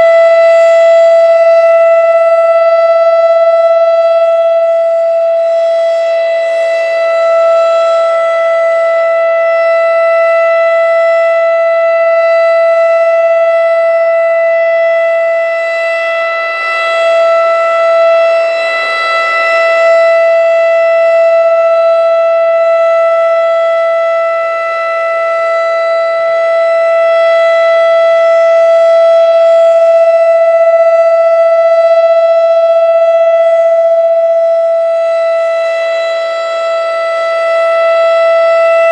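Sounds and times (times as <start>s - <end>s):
warning siren steady tone: 0.0s - 38.9s.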